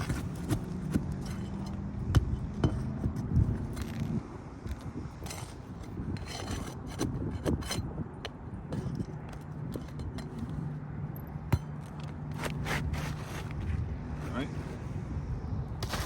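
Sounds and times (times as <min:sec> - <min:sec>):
flat bar scraping shingles: 0:00.0 - 0:01.9, 0:04.7 - 0:10.6, 0:12.3 - 0:14.8.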